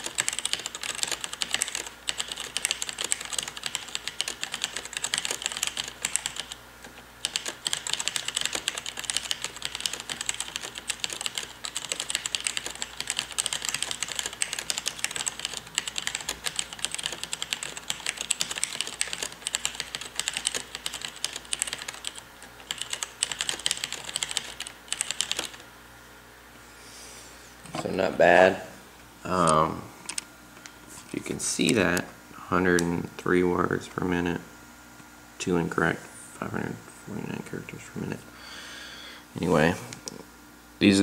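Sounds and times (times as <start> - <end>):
fast mechanical keyboard typing: 0.0 - 25.6.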